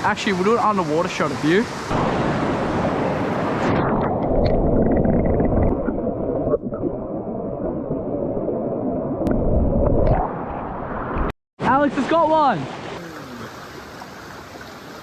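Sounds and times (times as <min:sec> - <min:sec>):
muffled underwater water rush: 0:00.0 - 0:11.3.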